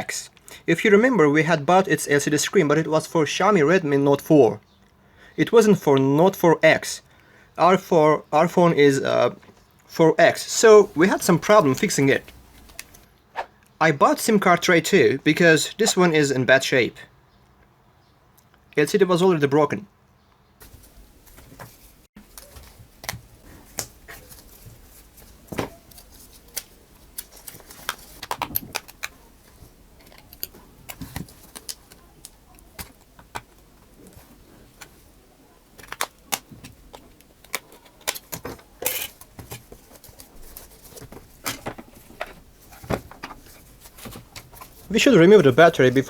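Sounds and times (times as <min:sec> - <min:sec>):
small tools clicking and tapping: 0:30.0 - 0:33.7, 0:35.8 - 0:40.2.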